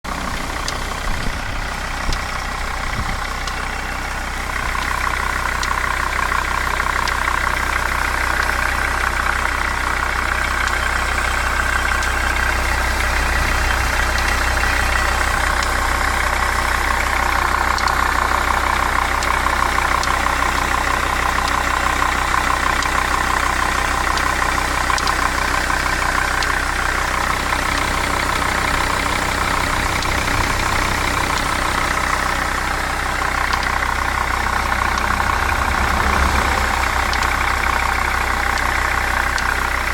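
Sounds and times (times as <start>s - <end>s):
diesel engine idling with ticking: 0.0s - 39.9s.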